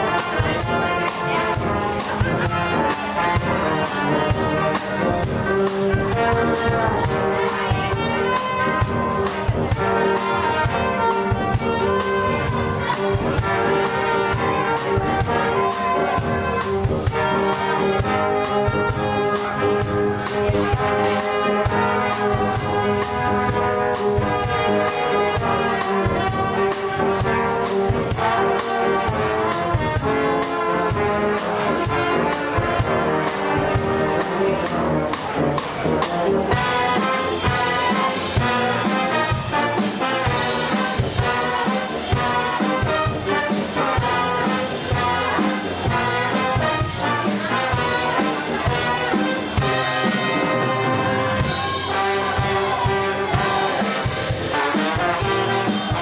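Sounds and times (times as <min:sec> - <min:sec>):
horns over driving beat: 0:00.0 - 0:56.0.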